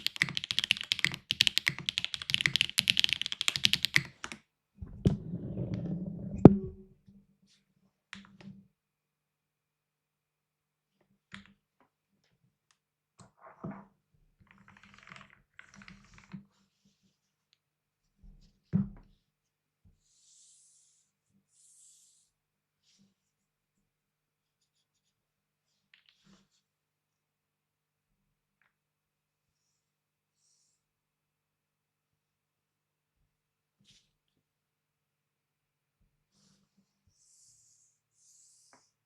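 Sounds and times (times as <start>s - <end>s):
mechanical keyboard typing: 0.0s - 4.4s.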